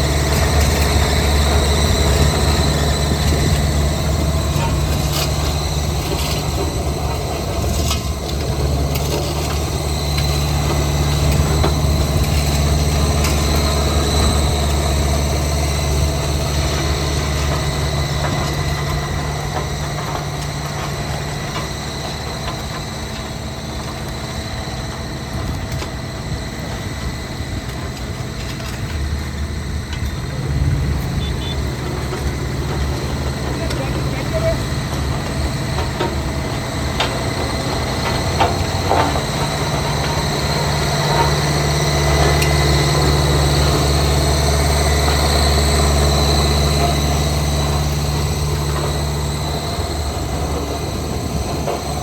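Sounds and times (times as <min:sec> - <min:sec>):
heavy diesel engine running: 0:00.0 - 0:52.0.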